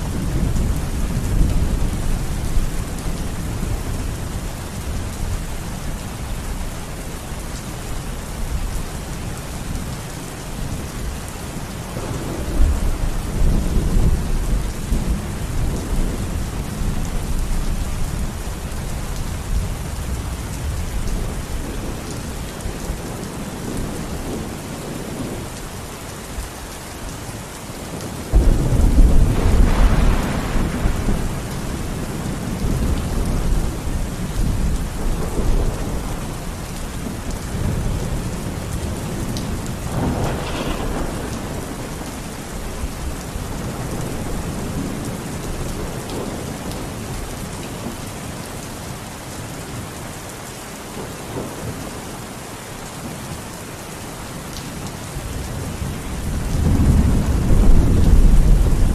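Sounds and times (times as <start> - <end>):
steady rain falling: 0.0 - 58.9
thunder rumbling: 11.9 - 18.4, 27.9 - 47.0, 55.4 - 58.9.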